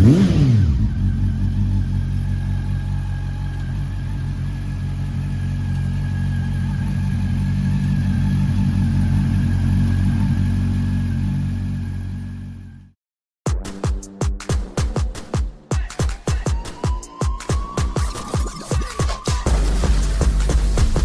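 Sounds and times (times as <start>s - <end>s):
motorcycle engine idling: 0.0s - 12.9s.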